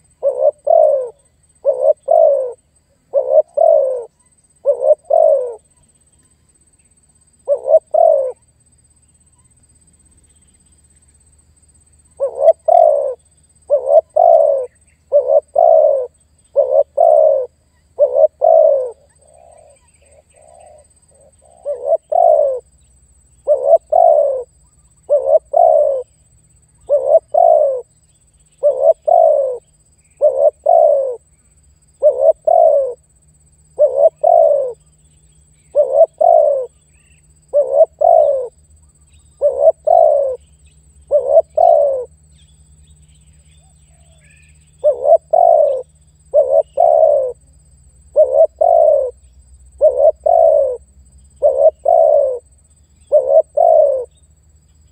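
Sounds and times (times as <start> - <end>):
dove cooing: 0.0 - 5.8, 7.4 - 8.5, 12.2 - 22.7, 23.4 - 26.1, 26.8 - 27.9, 28.6 - 31.2, 32.0 - 33.1, 33.7 - 34.9, 35.6 - 38.6, 39.4 - 40.4, 41.0 - 42.2, 43.6 - 47.5, 48.1 - 50.8, 51.4 - 54.2.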